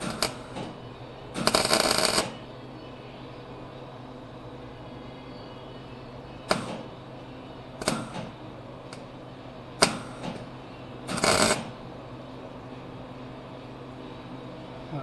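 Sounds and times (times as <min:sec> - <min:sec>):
welder crackling tack welds: 0:00.0 - 0:00.8, 0:01.4 - 0:02.4, 0:06.5 - 0:06.9, 0:07.8 - 0:09.1, 0:09.8 - 0:10.5, 0:11.1 - 0:11.8.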